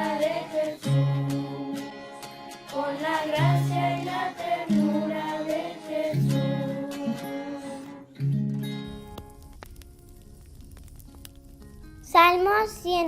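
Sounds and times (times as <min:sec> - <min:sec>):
person singing: 0:00.0 - 0:08.1
bass and strummed accompaniment: 0:00.0 - 0:13.0.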